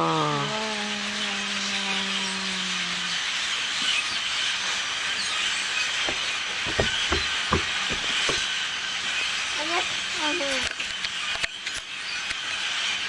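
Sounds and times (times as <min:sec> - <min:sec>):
flock of birds chirping: 0:00.0 - 0:13.0
low thumps: 0:06.0 - 0:08.5.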